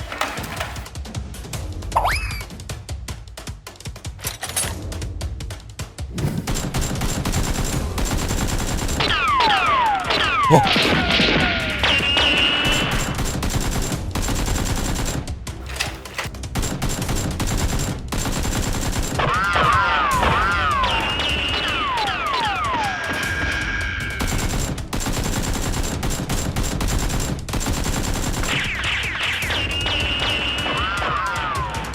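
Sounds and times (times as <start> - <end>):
rapid gunfire: 6.2 - 31.9
falling whistles: 20.4 - 24.2.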